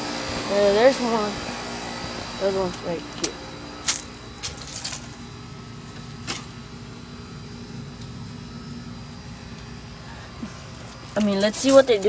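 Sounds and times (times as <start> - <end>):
steady low hum: 0.0 - 12.0
handling rustling noises: 10.4 - 12.0.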